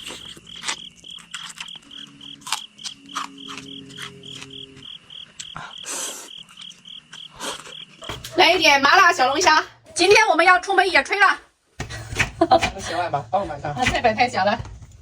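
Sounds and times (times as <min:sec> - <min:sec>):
low hum: 0:00.0 - 0:05.8
eating clicks and smacks: 0:00.0 - 0:08.4.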